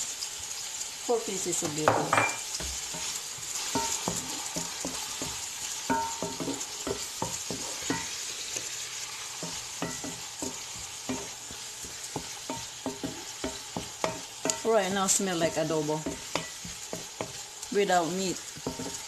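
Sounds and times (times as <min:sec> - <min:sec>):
food sizzling in oil: 0:00.0 - 0:19.0
utensil scraping pan: 0:02.2 - 0:08.7.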